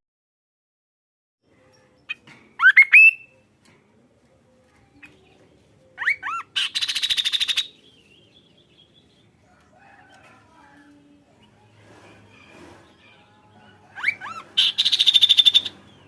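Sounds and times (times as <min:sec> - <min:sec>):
bird singing whistled notes: 0:02.6 - 0:03.4, 0:14.0 - 0:16.0.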